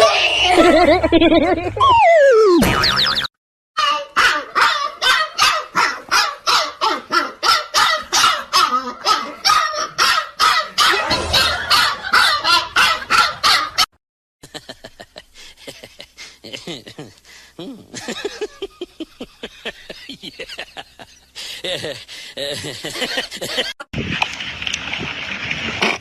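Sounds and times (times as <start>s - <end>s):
dog barking: 4.2s - 13.7s.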